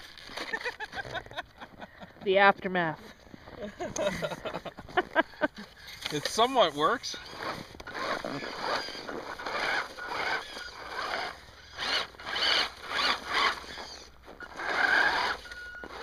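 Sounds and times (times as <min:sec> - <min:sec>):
electric motor whirring: 0:06.0 - 0:16.0.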